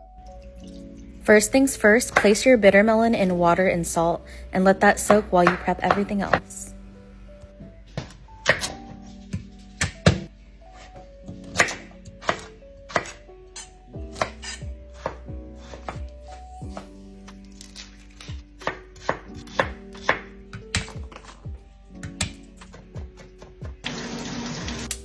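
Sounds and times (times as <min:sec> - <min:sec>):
soft background music: 0:00.0 - 0:25.0
knife chopping on cutting board: 0:08.0 - 0:08.8, 0:11.4 - 0:13.2, 0:14.1 - 0:16.1, 0:18.2 - 0:21.3.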